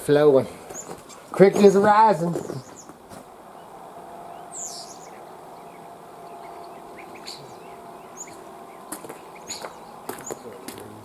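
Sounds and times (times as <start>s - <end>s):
small birds chirping: 0.0s - 11.0s
creek flowing: 2.9s - 10.7s.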